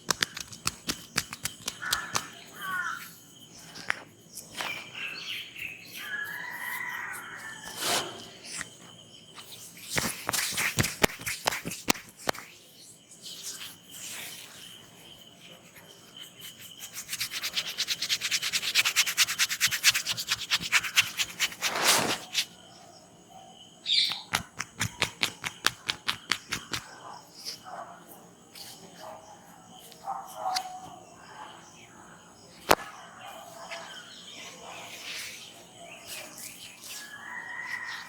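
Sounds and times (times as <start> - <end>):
fingers tapping on head: 0.1 - 2.3, 24.3 - 26.8
hands rubbing head and ears: 0.1 - 2.4, 24.3 - 26.8.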